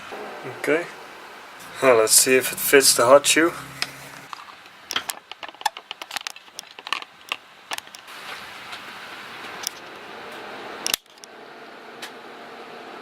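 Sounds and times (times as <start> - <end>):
steady hiss: 0.0 - 10.8
plastic clicks and scrapes: 3.8 - 8.1.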